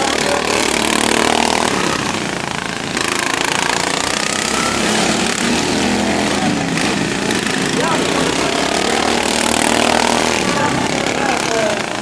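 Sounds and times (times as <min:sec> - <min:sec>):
racing lawn mower engines revving: 0:00.0 - 0:12.0.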